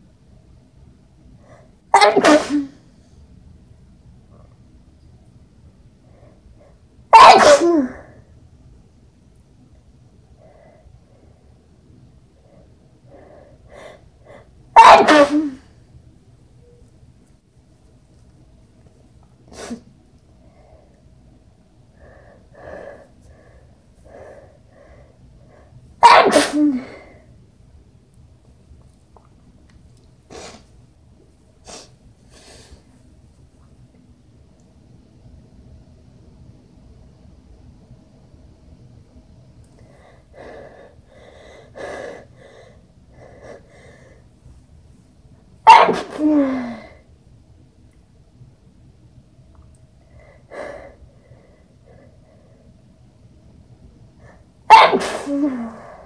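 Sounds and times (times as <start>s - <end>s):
person sneezing: 1.9s - 2.9s, 7.1s - 8.2s, 14.8s - 15.7s, 19.5s - 19.9s, 26.0s - 27.2s, 45.7s - 47.0s, 54.7s - 56.0s
catching breaths: 12.4s - 14.6s, 39.8s - 44.3s.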